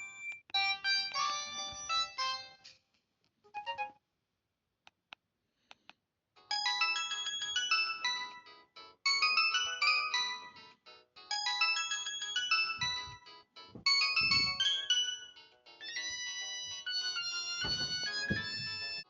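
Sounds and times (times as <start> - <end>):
phone ringtone melody: 0.0 - 2.6, 6.5 - 19.0.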